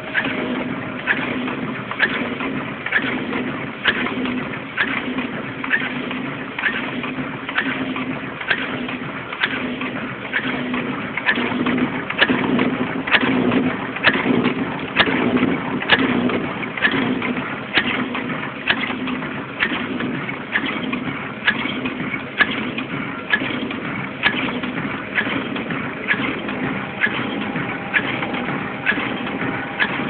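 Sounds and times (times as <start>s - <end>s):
machine humming: 0.0s - 4.6s, 23.9s - 30.0s
machine clicking: 0.0s - 30.0s.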